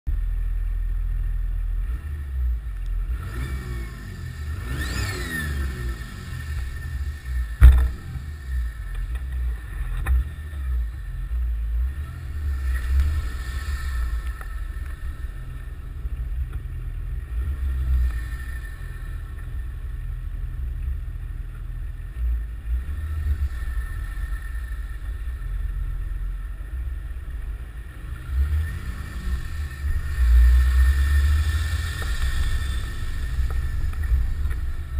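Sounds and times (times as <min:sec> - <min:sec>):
diesel engine under load: 0:01.8 - 0:34.9
sharp thump: 0:07.6 - 0:08.2.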